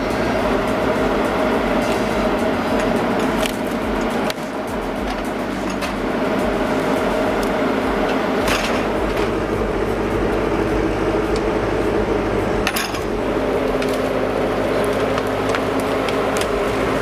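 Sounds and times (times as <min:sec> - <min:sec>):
heavy machine engine running: 0:00.0 - 0:17.0
sharp metallic knocks: 0:00.0 - 0:17.0.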